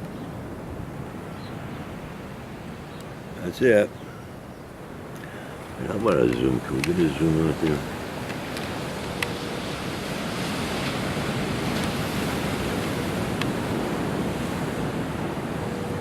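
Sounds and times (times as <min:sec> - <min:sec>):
surf washing against rocky shore: 0:04.8 - 0:16.0.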